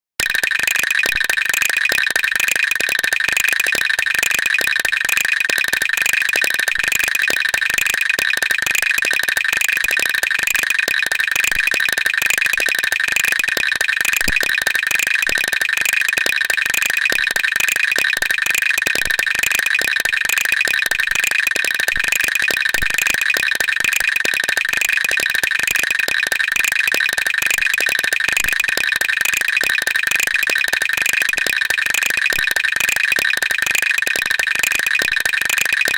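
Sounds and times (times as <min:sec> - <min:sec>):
teeth chattering: 0:00.2 - 0:35.9.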